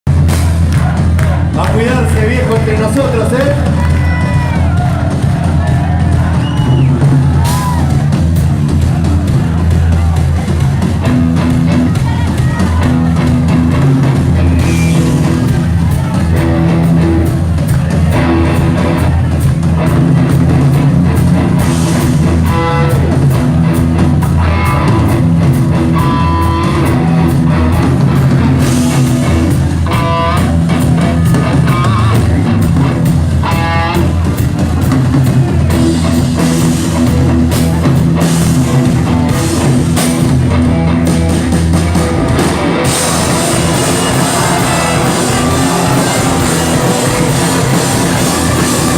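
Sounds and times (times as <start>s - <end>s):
drum kit beat: 0.1s - 48.9s
rock band playing live: 0.1s - 48.9s
melodic guitar lines: 11.0s - 48.9s.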